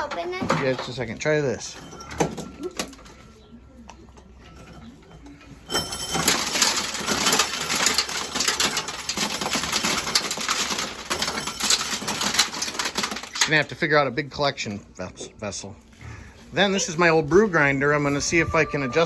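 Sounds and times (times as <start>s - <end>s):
kernels rattling against a bin: 0.0s - 3.6s, 4.2s - 15.1s.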